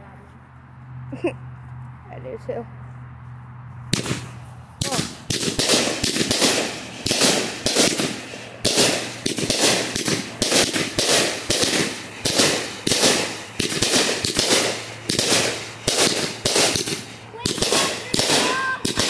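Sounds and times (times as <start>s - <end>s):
firework cake bangs with crackling: 4.0s - 19.0s.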